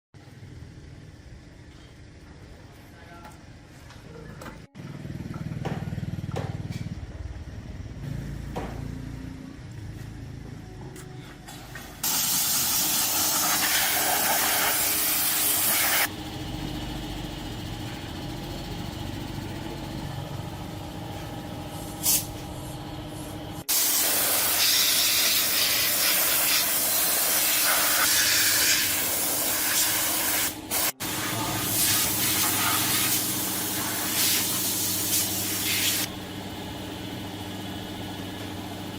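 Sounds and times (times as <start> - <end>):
loud hissing spray: 12.0 - 16.1, 23.7 - 36.1.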